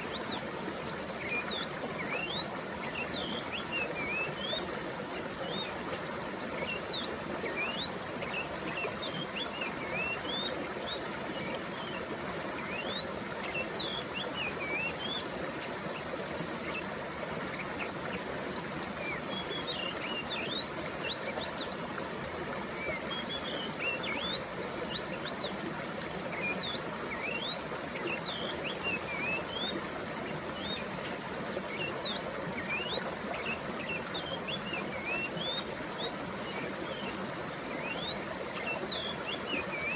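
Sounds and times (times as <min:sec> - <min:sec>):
flowing water rushing: 0:00.0 - 0:39.9
small birds chirping: 0:17.5 - 0:39.9.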